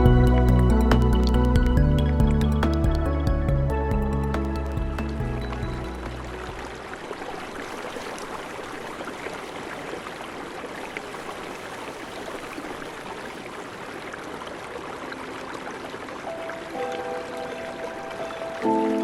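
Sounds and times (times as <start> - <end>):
mountain stream rushing: 4.4 - 19.0.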